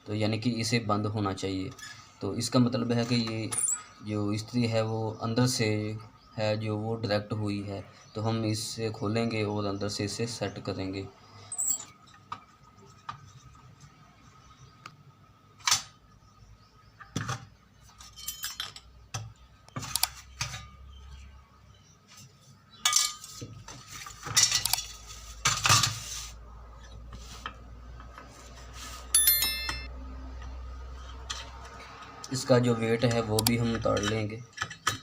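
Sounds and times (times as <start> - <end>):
metal parts clicking and clinking: 18.0 - 18.9, 24.2 - 25.0, 29.2 - 29.9
short ringing metal clink: 29.2 - 29.9.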